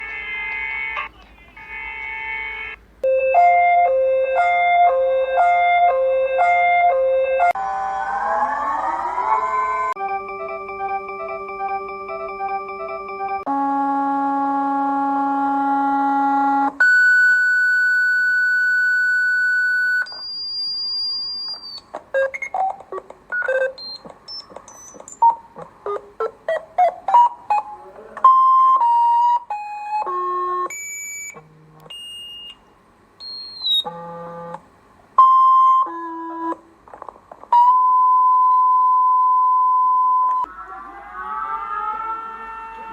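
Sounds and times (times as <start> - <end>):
synthesized electronic alarm tones: 0.0 - 17.1
rising siren-like glide: 3.6 - 13.5, 40.4 - 42.9.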